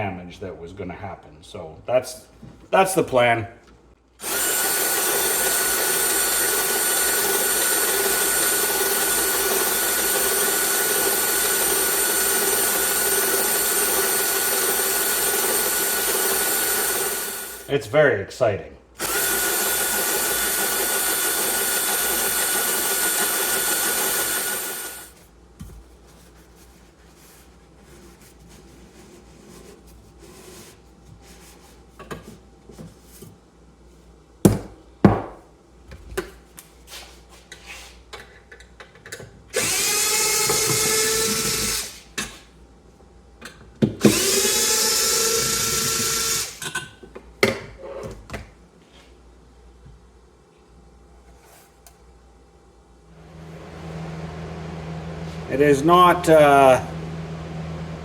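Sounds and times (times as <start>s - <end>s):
cordless drill spinning hone: 4.2s - 17.7s, 19.0s - 25.2s, 39.6s - 42.0s, 44.0s - 46.6s.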